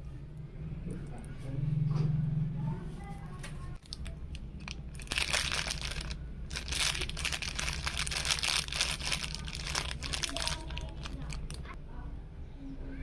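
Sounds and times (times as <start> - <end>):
plastic packaging crinkling: 3.8 - 11.8.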